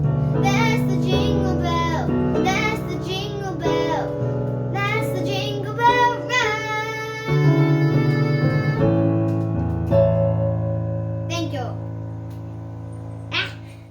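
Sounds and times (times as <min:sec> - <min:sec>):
instrumental accompaniment: 0:00.0 - 0:13.9
child singing: 0:00.4 - 0:09.0.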